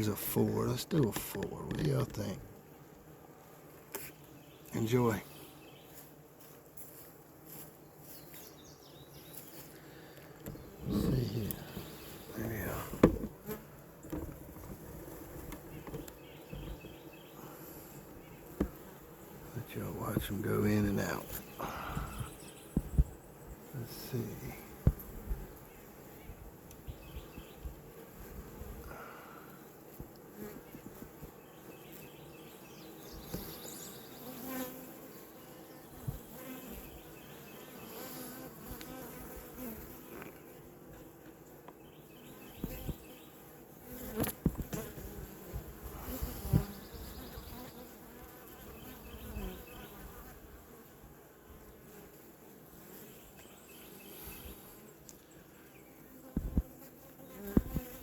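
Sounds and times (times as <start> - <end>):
bees buzzing: 0.0 - 58.0
sharp knocks: 12.9 - 13.4.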